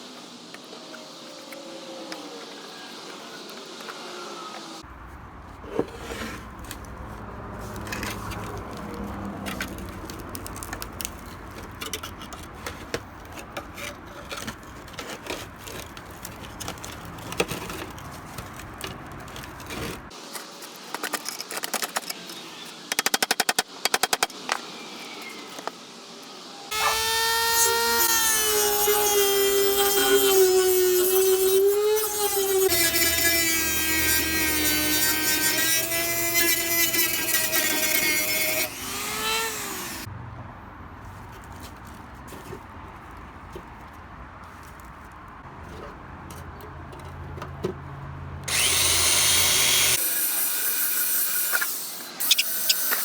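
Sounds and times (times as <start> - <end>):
power tool whining: 26.7 - 40.1, 48.5 - 50.1.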